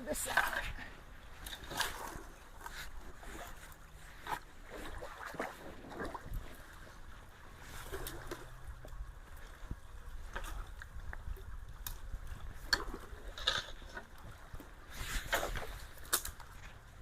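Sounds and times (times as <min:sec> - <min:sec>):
water sloshing and splashing: 0:00.0 - 0:17.0.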